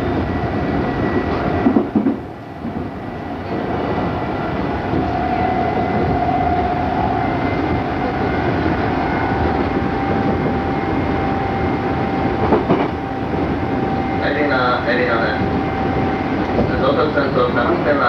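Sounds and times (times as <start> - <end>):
train wheels rumbling: 0.0 - 18.0.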